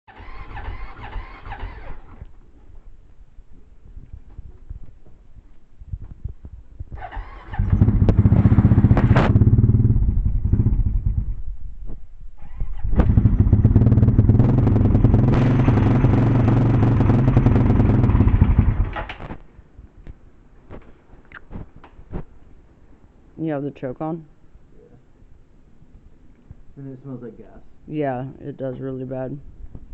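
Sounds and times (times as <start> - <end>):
motorcycle engine running: 5.9 - 19.3.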